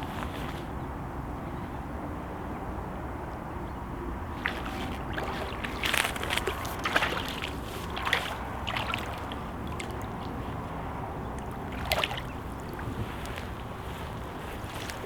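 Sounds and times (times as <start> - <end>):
water splashing and sloshing: 4.2 - 15.0
flowing river water rushing: 4.4 - 15.0.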